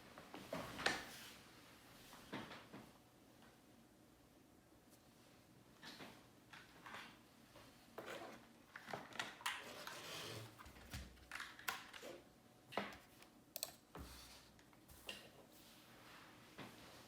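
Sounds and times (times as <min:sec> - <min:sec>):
keyboard keystrokes clicking: 0:13.0 - 0:13.9.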